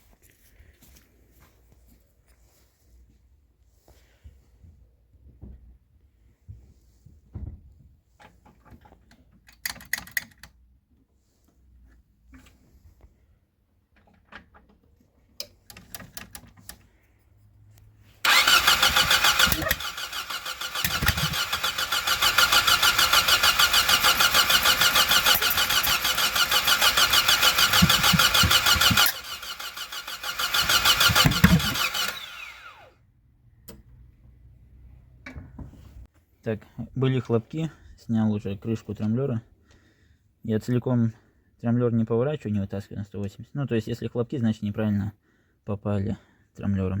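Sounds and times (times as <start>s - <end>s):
starter cranking engine: 18.2s - 32.9s.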